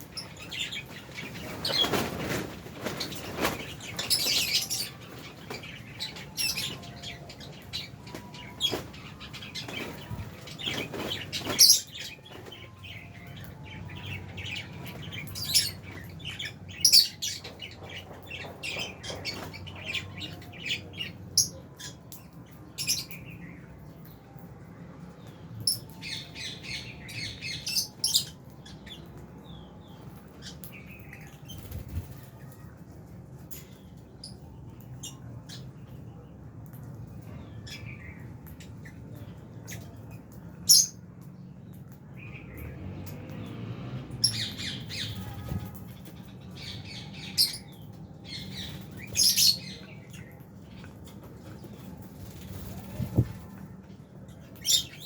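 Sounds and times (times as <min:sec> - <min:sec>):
lovebirds chirping and squawking: 0:00.0 - 0:24.2, 0:25.2 - 0:36.2, 0:36.9 - 0:43.4, 0:44.2 - 0:55.0.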